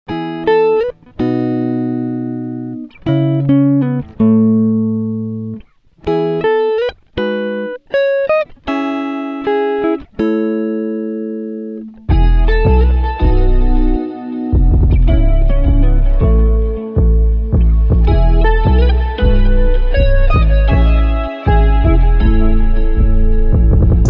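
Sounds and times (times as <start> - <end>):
melody of held notes and chords: 0.1 - 24.0
deep bass: 12.1 - 14.0, 14.6 - 24.0.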